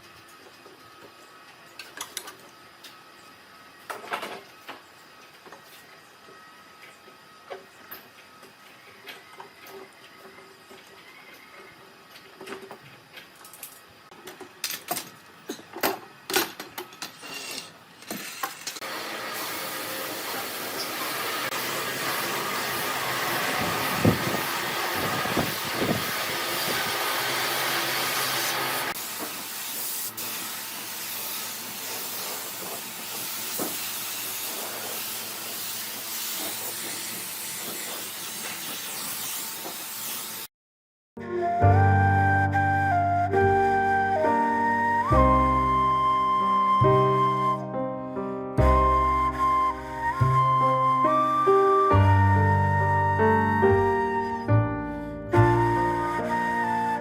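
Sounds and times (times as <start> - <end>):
steady hiss: 18.8 - 40.4.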